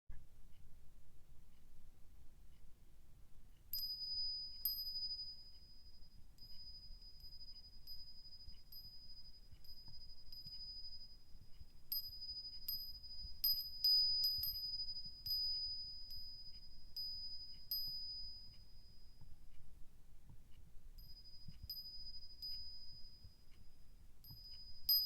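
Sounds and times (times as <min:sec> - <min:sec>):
wind chime ringing: 0:03.7 - 0:19.2, 0:21.0 - 0:23.4, 0:24.2 - 0:25.0.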